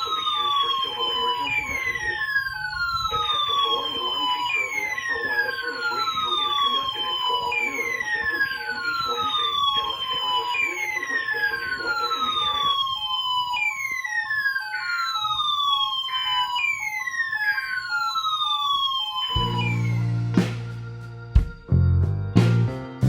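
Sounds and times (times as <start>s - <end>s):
falling electronic siren sweep: 0.0s - 21.8s
faint murmuring voice: 2.8s - 12.9s
two-note quick beeps: 19.4s - 21.7s.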